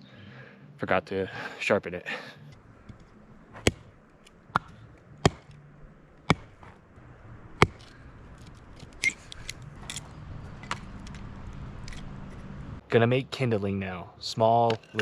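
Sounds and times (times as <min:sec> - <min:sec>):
axe chopping firewood: 0:02.9 - 0:05.6, 0:06.2 - 0:06.8, 0:07.5 - 0:10.0.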